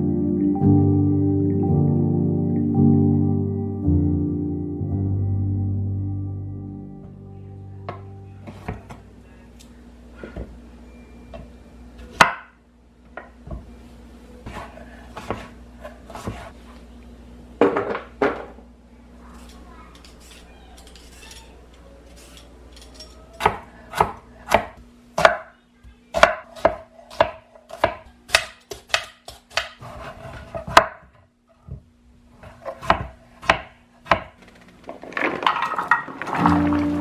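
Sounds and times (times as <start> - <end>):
background music: 0.0 - 9.2, 36.4 - 37.0
knife chopping on cutting board: 14.5 - 16.5, 23.4 - 25.4, 26.2 - 31.1, 32.4 - 34.4.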